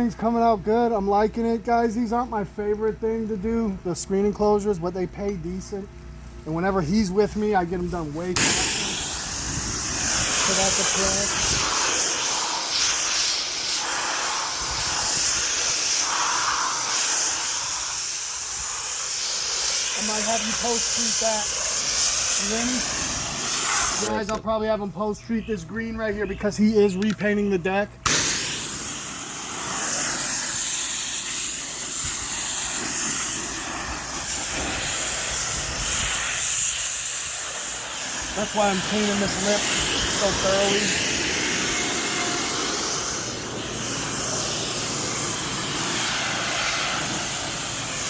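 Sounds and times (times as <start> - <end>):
pressure washer spraying: 7.8 - 24.3, 28.0 - 48.0.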